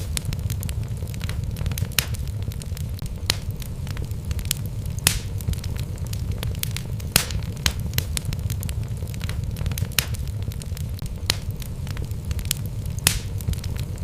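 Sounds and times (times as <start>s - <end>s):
burning logs crackling and popping: 0.0s - 14.0s
low rumble of fire: 0.0s - 14.0s.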